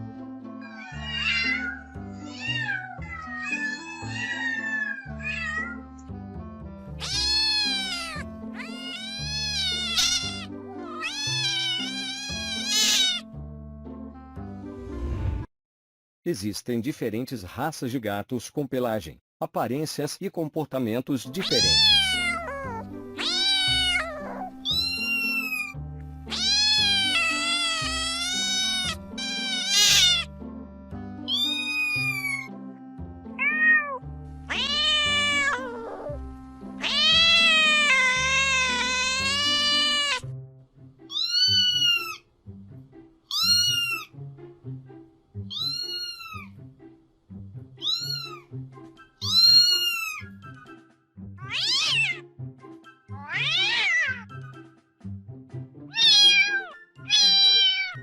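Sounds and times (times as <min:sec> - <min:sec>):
background music: 0:00.0 - 0:15.5, 0:19.6 - 0:58.0
cats meowing: 0:00.5 - 0:05.8, 0:06.9 - 0:13.3, 0:21.4 - 0:30.3, 0:31.2 - 0:32.5, 0:33.3 - 0:36.2, 0:36.8 - 0:40.2, 0:41.1 - 0:42.2, 0:43.3 - 0:44.2, 0:45.4 - 0:46.6, 0:47.8 - 0:48.5, 0:49.2 - 0:50.4, 0:51.4 - 0:52.2, 0:53.1 - 0:54.3, 0:55.9 - 0:58.0.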